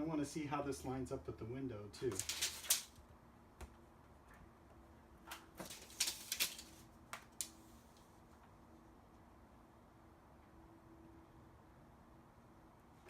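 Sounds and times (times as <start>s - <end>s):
tape being pulled and torn: 2.1s - 3.0s, 5.3s - 7.6s.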